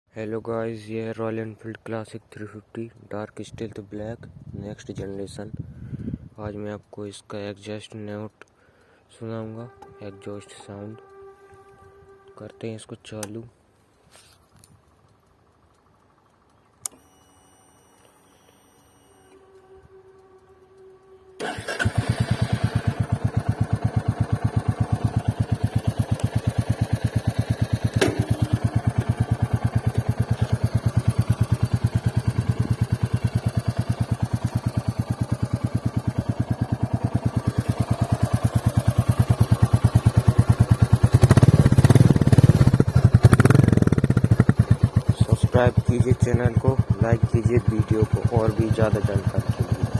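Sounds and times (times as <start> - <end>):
motorcycle engine starting and idling: 14.8 - 49.9.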